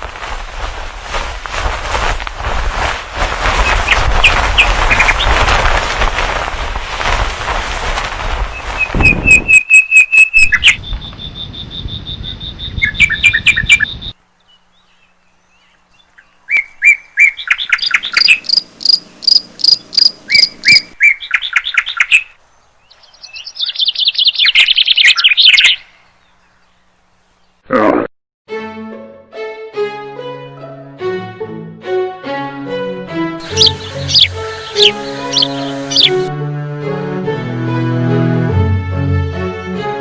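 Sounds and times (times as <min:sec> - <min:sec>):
songbirds chirping: 0:09.6 - 0:27.7, 0:33.4 - 0:36.3
loud rushing noise: 0:33.4 - 0:36.3.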